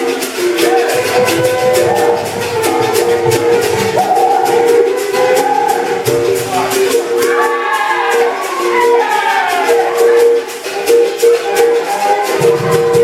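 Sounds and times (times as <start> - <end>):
berimbau struck notes: 0.7 - 7.4.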